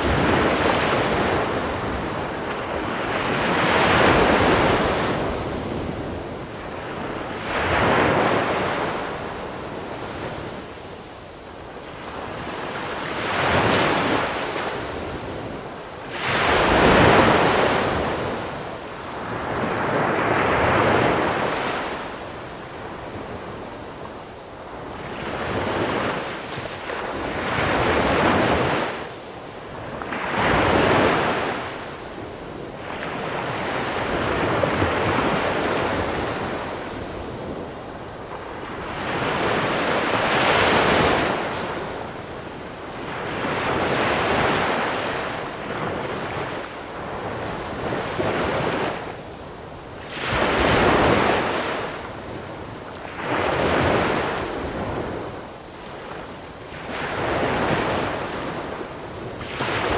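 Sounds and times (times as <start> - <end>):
wind on microphone: 0.0 - 59.9.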